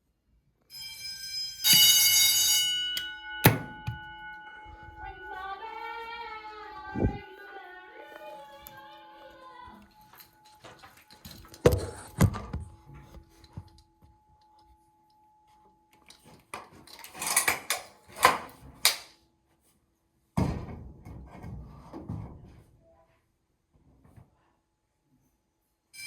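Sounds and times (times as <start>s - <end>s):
heavy ringing thud: 1.7s - 5.3s.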